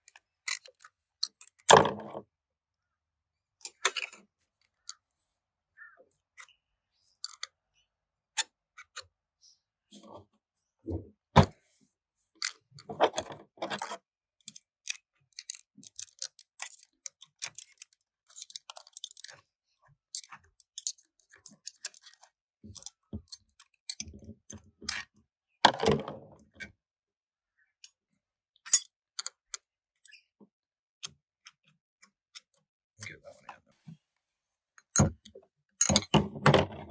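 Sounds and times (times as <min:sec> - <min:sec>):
metal parts and tools clinking: 0:03.7 - 0:04.2.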